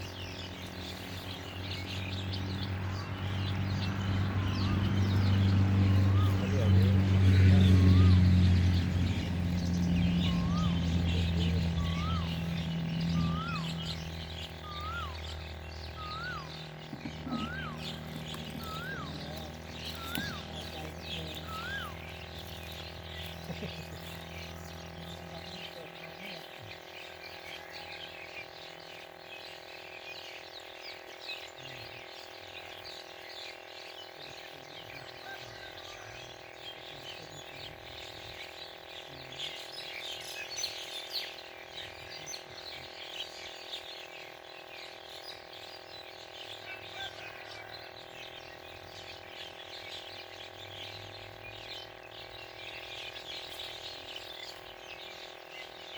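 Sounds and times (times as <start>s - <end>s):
low hum: 0.0s - 27.4s
small birds chirping: 0.0s - 55.9s
steady layered drone: 0.0s - 55.9s.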